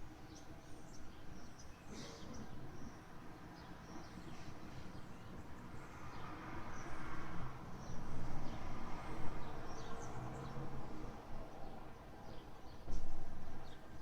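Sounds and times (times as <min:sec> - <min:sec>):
small birds chirping: 0:00.2 - 0:06.9.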